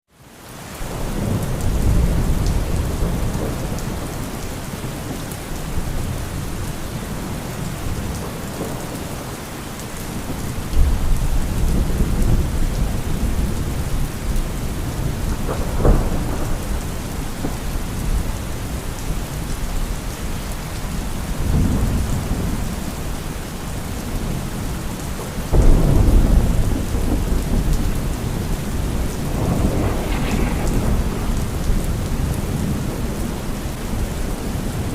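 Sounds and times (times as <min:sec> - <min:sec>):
steady rain: 0:00.1 - 0:34.9
thunder rumbles: 0:00.9 - 0:34.9
sharp thunderclap: 0:14.8 - 0:18.2, 0:25.5 - 0:34.8.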